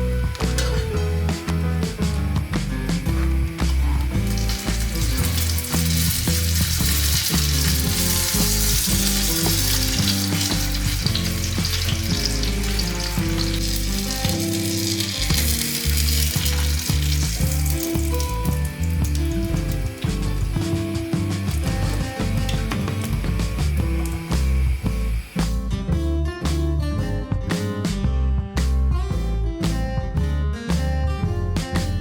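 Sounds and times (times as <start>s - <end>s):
food sizzling in a pan: 0.0s - 25.6s
background music with bass: 0.0s - 32.0s.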